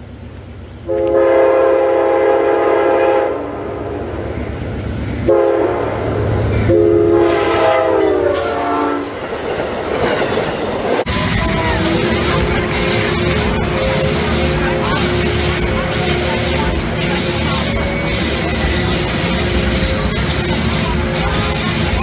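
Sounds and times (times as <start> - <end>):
locomotive air horn blasts: 0.8 - 3.8, 5.2 - 6.0, 6.6 - 9.2
train wheels clickety-clack: 6.4 - 22.0.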